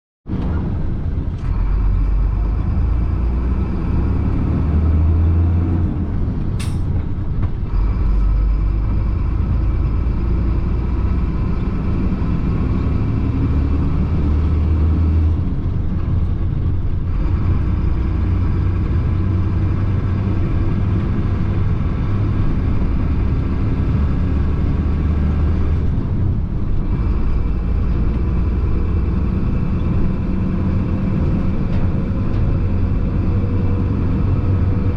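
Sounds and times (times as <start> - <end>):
truck diesel engine rumble: 0.3 - 34.9
sharp click: 6.6 - 7.1.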